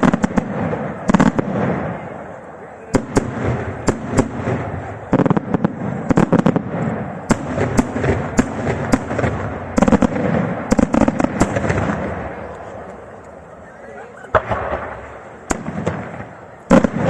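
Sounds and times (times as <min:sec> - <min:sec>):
firework bangs: 0:00.0 - 0:12.8, 0:14.3 - 0:17.0
firework crackling: 0:00.0 - 0:13.5, 0:14.2 - 0:17.0.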